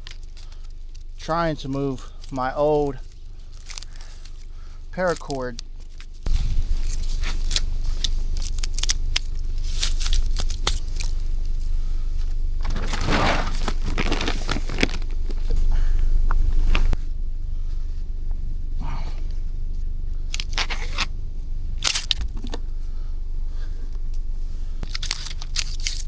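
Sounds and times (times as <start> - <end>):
tarp rustling and crinkling: 12.6 - 17.0.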